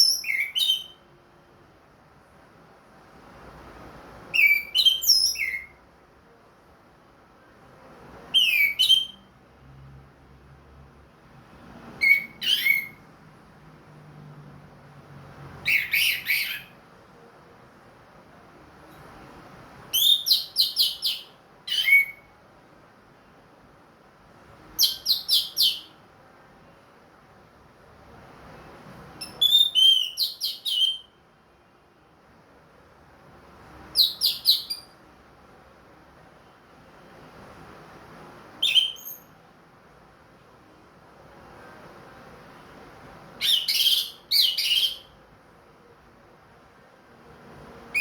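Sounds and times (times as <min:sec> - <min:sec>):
bird singing rapid phrases: 0:00.0 - 0:01.0, 0:04.3 - 0:05.8, 0:08.3 - 0:09.3, 0:12.0 - 0:13.0, 0:15.6 - 0:16.8, 0:19.9 - 0:22.3, 0:24.8 - 0:26.0, 0:29.2 - 0:31.2, 0:33.9 - 0:35.0, 0:38.6 - 0:39.3, 0:43.4 - 0:45.2
thrush singing whistled phrases: 0:08.3 - 0:09.3, 0:12.0 - 0:13.0, 0:29.2 - 0:31.2, 0:38.6 - 0:39.3.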